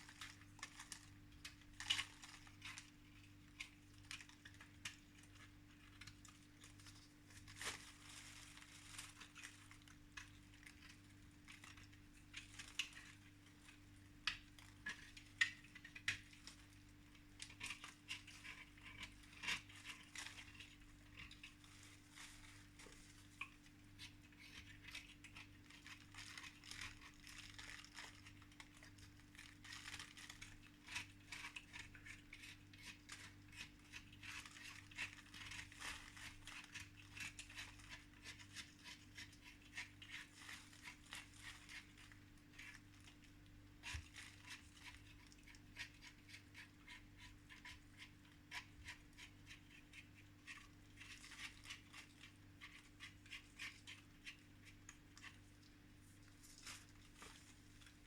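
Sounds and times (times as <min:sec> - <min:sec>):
faint steady hum: 0:00.0 - 0:58.0
chalk scratching and clicking: 0:43.8 - 0:55.5.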